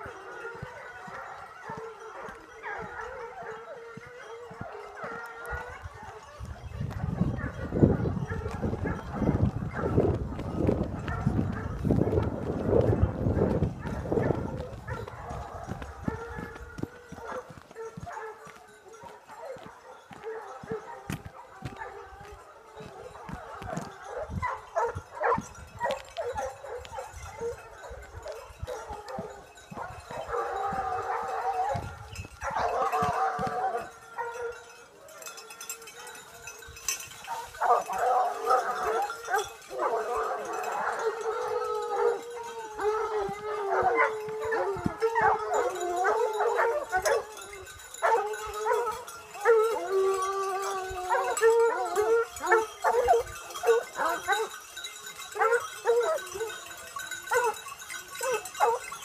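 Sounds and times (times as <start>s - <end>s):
animal howling: 0.0s - 9.3s, 30.1s - 36.2s, 37.8s - 54.6s, 55.4s - 57.6s.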